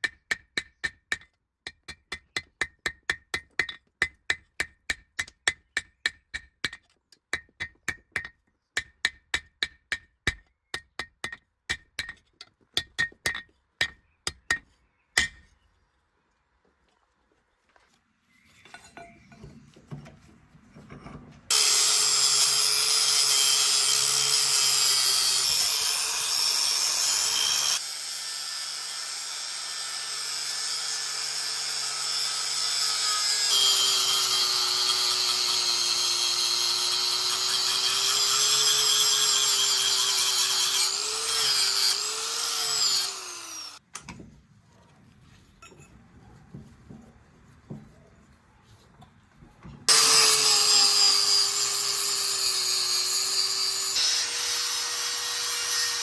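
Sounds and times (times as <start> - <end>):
electric power tool running: 21.5 - 43.8, 49.9 - 56.0.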